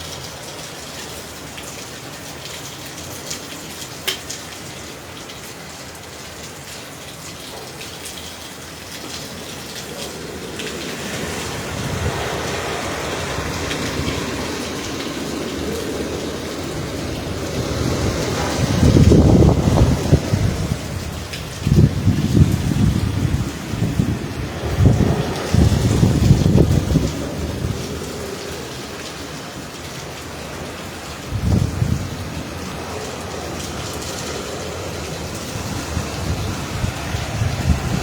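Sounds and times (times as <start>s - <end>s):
heavy rain pouring: 0.0s - 38.0s
strong wind: 8.8s - 38.0s.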